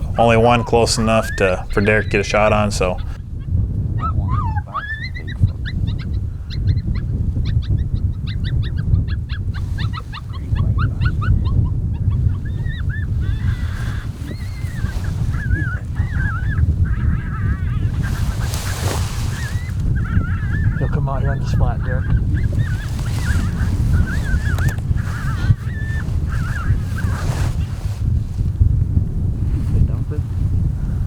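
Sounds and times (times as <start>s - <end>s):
coyote howls: 0.0s - 3.2s, 3.9s - 27.3s
coyote yips: 3.9s - 27.6s.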